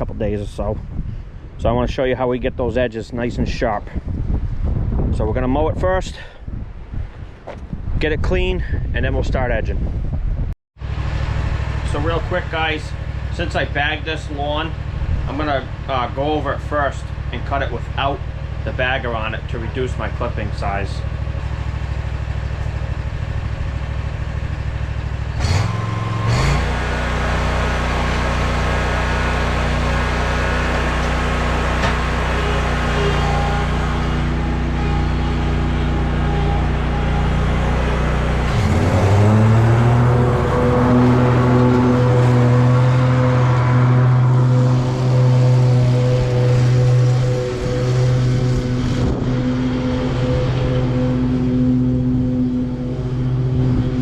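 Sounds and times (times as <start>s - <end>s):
lawn mower engine running: 10.8s - 54.0s.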